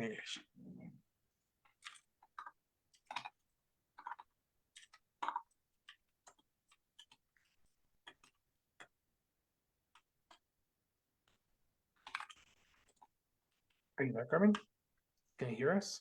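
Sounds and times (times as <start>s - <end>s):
faint clicks and taps: 1.6s - 9.0s, 9.8s - 10.5s, 11.2s - 15.3s.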